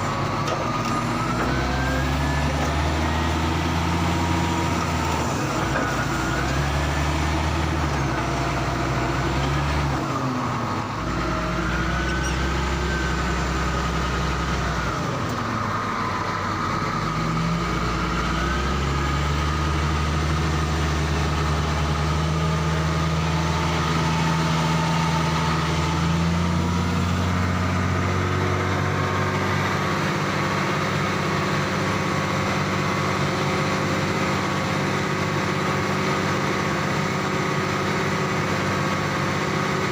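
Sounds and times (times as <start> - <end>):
diesel engine revving: 0.0 - 39.9
faint wavering squeal: 11.8 - 13.4.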